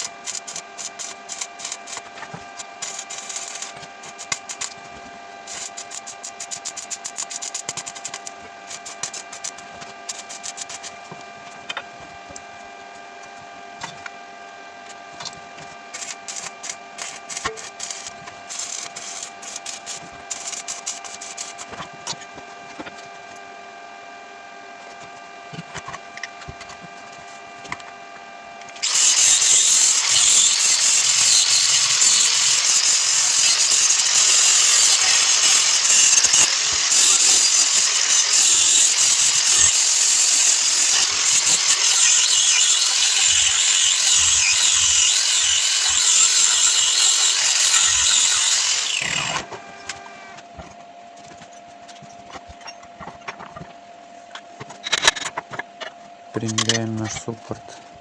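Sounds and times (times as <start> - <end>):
workshop tool working material: 0.0 - 58.0
faint hum: 49.1 - 58.0.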